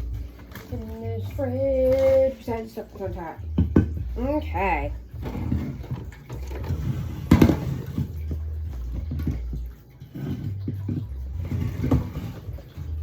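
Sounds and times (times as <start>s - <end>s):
cans and bottles knocking: 3.0s - 4.6s, 5.2s - 13.0s.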